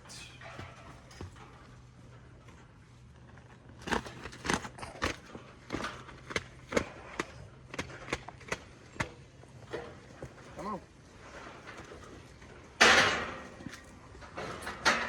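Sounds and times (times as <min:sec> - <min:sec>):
footfalls in a livestock pen: 0:00.1 - 0:03.3.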